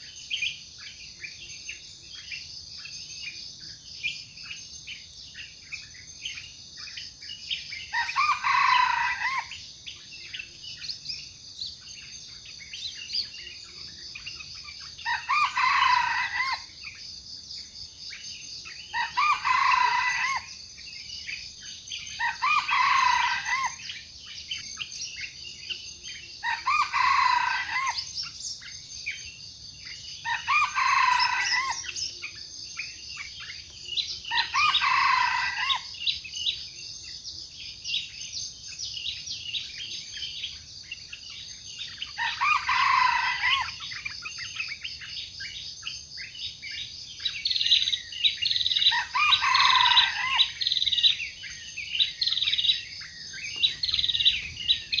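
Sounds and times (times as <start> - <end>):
insect drone: 0.0 - 55.0
junglefowl crowing: 7.9 - 9.5, 15.0 - 16.7, 18.9 - 20.6, 22.2 - 23.8, 26.4 - 28.1, 30.3 - 32.0, 34.3 - 35.9, 42.2 - 43.9, 48.9 - 50.6
small bird chirps: 43.5 - 55.0.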